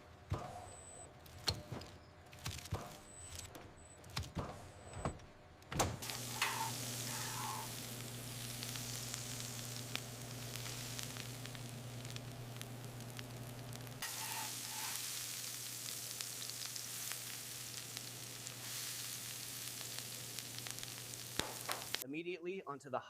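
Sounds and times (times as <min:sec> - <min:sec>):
low machine hum: 0:06.0 - 0:14.9
burger patties sizzling: 0:06.0 - 0:22.0.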